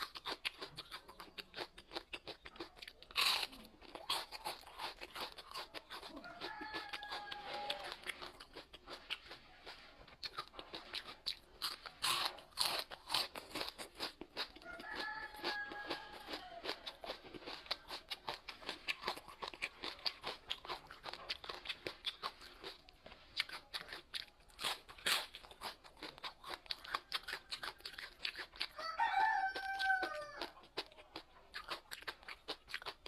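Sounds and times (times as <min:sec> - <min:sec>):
crunchy food being chewed: 0:00.0 - 0:33.0
rooster crowing: 0:06.2 - 0:08.1, 0:14.6 - 0:17.0, 0:28.7 - 0:30.6.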